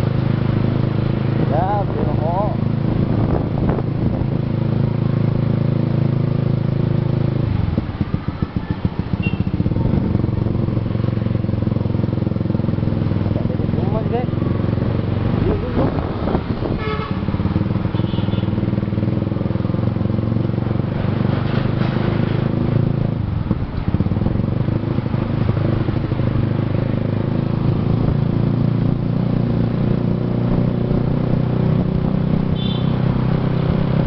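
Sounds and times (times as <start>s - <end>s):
motorcycle engine running: 0.0s - 34.0s
short horn toots: 16.8s - 17.2s, 32.5s - 32.9s.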